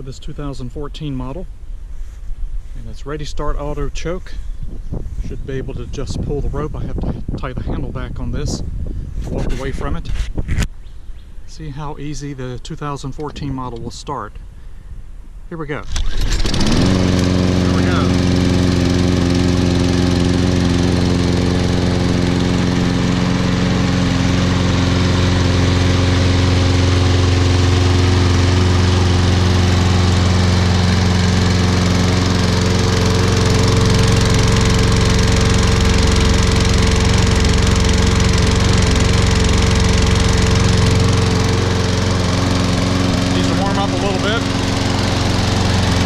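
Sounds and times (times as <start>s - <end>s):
lawn mower engine running: 15.7s - 46.0s.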